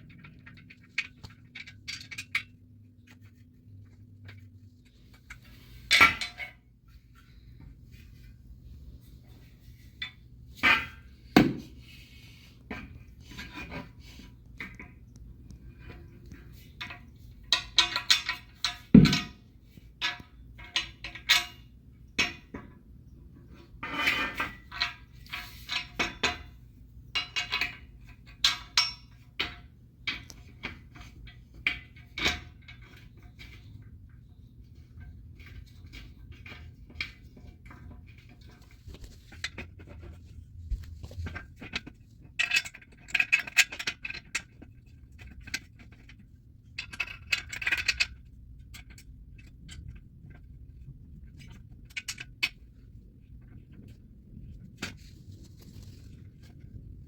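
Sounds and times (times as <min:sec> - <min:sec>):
metal parts clinking and clanking: 0:00.0 - 0:07.3, 0:15.9 - 0:22.8, 0:23.8 - 0:26.6, 0:27.2 - 0:40.2, 0:40.8 - 0:50.8.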